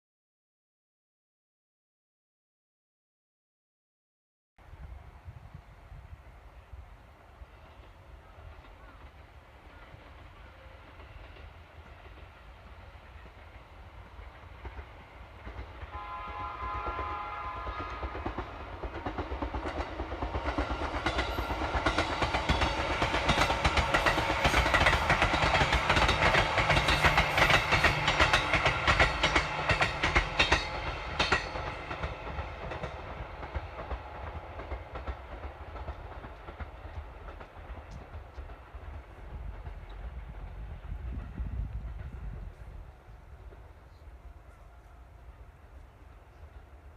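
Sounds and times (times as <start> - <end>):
train horn: 15.8 - 19.0, 42.4 - 46.7
train wheels clattering over rail joints: 18.2 - 42.6.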